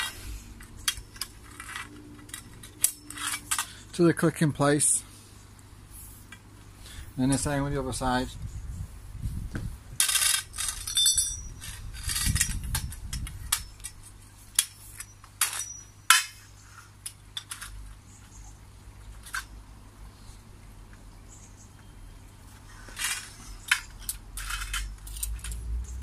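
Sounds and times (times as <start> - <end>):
metal tubes clinking and scraping: 0.0 - 4.0, 10.0 - 18.0, 22.8 - 26.0.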